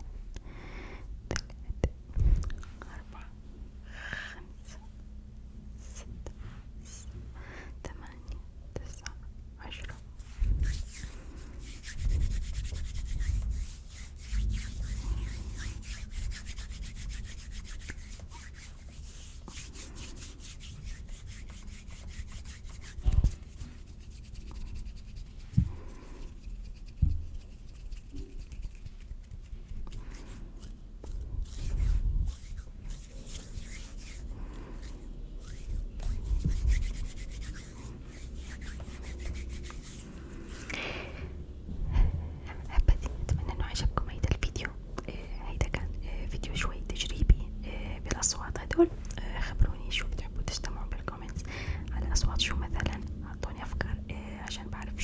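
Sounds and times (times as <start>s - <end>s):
hands rubbing together: 10.2s - 41.0s.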